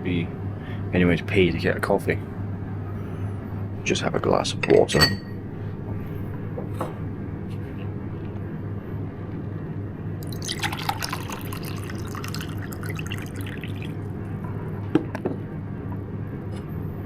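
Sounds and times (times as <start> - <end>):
steady low hum: 0.0 - 17.0
water poured into a cup: 10.2 - 14.2.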